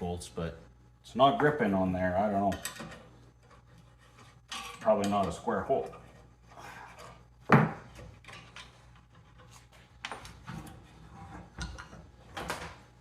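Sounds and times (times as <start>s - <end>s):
hand tools clinking and scraping: 2.4s - 6.3s.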